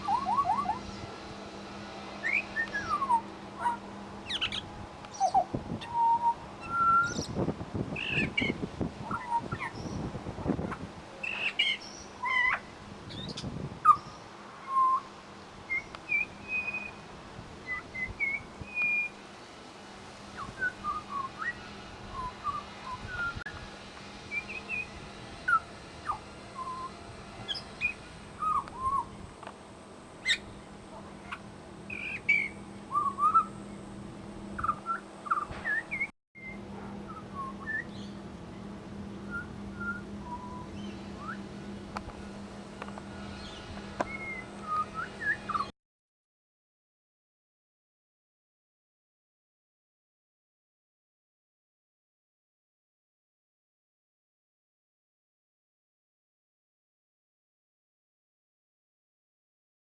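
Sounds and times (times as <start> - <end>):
bird singing whistled notes: 0.0 - 1.1, 2.2 - 10.1, 11.2 - 15.1, 15.7 - 17.0, 17.6 - 19.2, 20.4 - 23.4, 24.3 - 29.2, 30.2 - 30.5, 31.2 - 33.8, 34.6 - 38.2, 39.3 - 41.5, 43.4 - 45.7.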